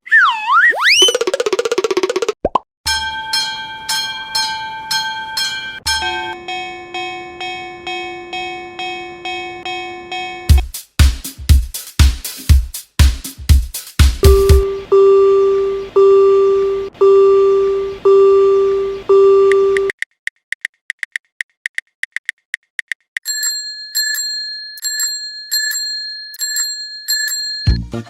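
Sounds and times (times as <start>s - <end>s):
low crossing bell dinging: 23.3s - 27.8s.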